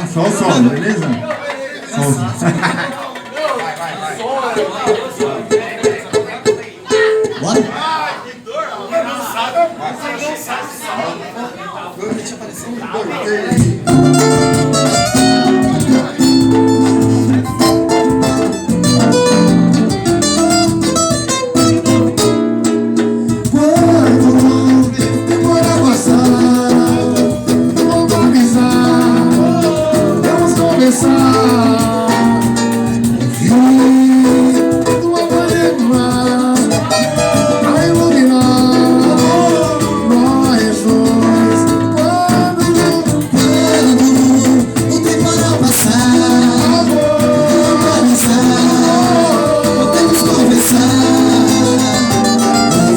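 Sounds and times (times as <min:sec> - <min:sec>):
acoustic guitar music: 0:13.5 - 0:52.9.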